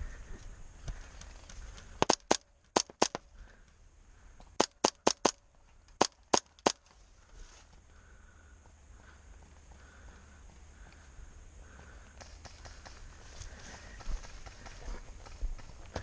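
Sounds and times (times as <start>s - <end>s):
airsoft gun shots: 2.0s - 3.2s, 4.6s - 5.4s.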